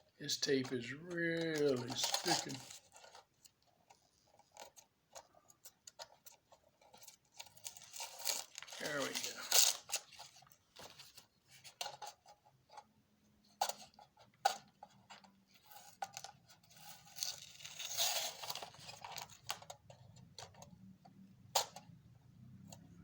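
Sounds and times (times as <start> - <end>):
masking tape peeling and crumpling: 1.2 - 3.2, 7.4 - 10.5, 16.8 - 19.4
rustling tearing: 1.3 - 3.3, 6.9 - 11.2, 16.2 - 19.5.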